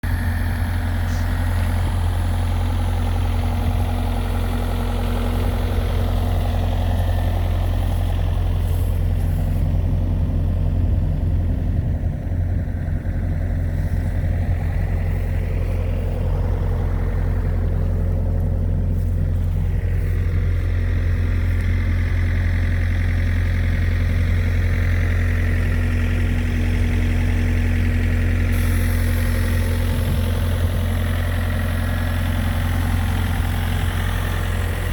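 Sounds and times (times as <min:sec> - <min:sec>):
mower engine hum: 0:00.0 - 0:34.9
higher-pitched mower sound: 0:27.1 - 0:31.7.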